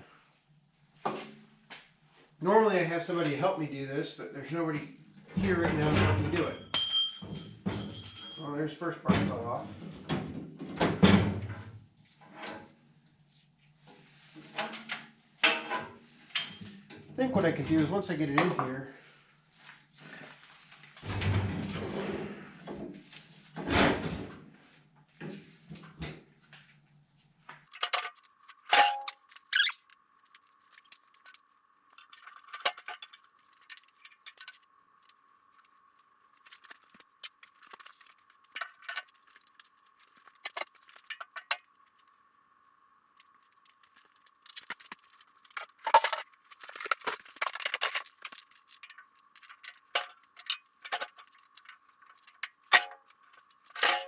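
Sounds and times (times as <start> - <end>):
metal parts clinking: 27.7 - 42.2, 43.2 - 54.0.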